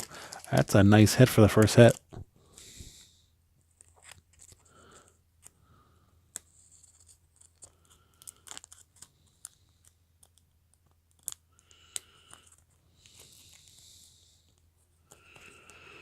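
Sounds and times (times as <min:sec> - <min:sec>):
trading cards clicking and rustling: 0:00.0 - 0:02.2, 0:03.7 - 0:05.6, 0:06.3 - 0:13.8.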